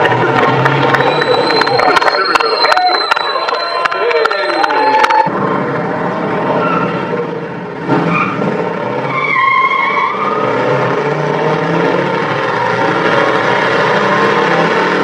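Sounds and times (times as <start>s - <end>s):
car engine at high revs: 0.0s - 2.8s, 10.0s - 15.0s
tyres squealing: 0.1s - 5.3s, 9.0s - 10.8s.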